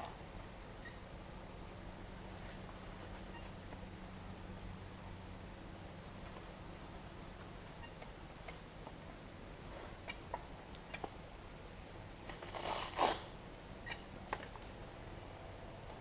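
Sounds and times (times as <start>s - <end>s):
sandpaper rasping on filler: 12.4s - 13.3s.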